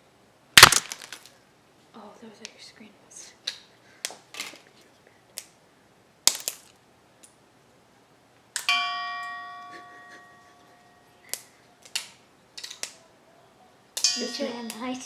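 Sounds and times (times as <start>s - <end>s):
dry pasta snapping: 0.6s - 1.4s, 6.3s - 7.4s, 11.2s - 13.0s
bell-like ring: 8.7s - 11.1s, 14.0s - 15.0s.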